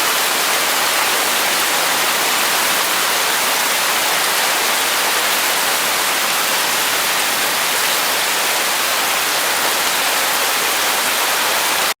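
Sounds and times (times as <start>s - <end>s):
heavy rain falling: 0.0s - 12.0s.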